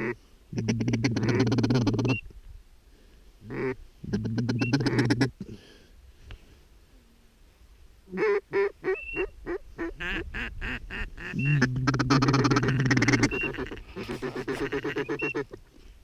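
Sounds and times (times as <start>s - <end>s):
ducks quacking: 0.0s - 2.2s, 3.5s - 5.4s, 8.1s - 15.7s.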